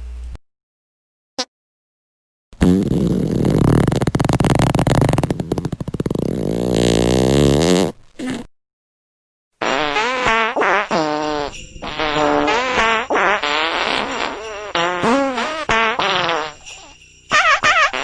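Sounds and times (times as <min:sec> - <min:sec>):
fart sound effects: 0:02.6 - 0:08.5, 0:09.6 - 0:18.0.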